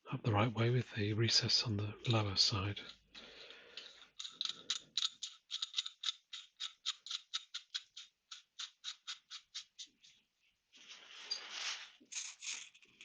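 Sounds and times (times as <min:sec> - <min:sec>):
ratchet wrench clicking: 0:04.2 - 0:09.6.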